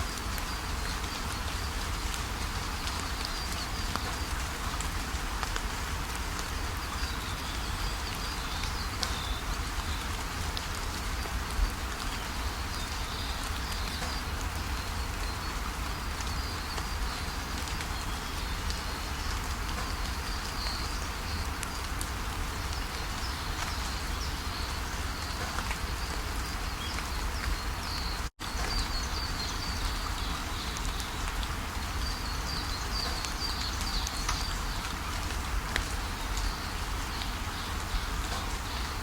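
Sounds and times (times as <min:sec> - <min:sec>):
small birds chirping: 0:11.6 - 0:39.0.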